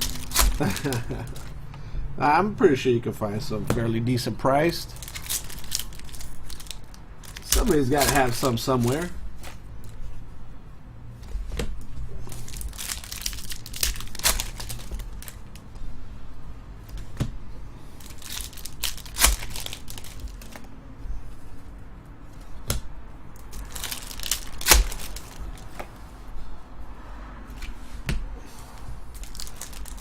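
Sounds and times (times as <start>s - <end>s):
card pack wrappers tearing and crinkling: 0.0s - 1.6s, 4.8s - 9.6s, 12.3s - 15.7s, 18.0s - 20.7s, 23.4s - 25.8s, 29.2s - 30.0s.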